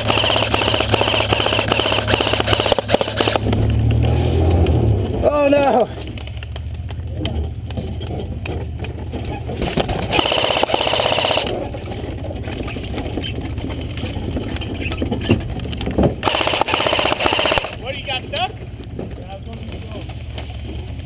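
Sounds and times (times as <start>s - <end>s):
airsoft gun full-auto bursts: 0.0s - 3.4s, 10.1s - 11.6s, 16.2s - 17.8s
truck engine rumbling: 0.0s - 21.0s.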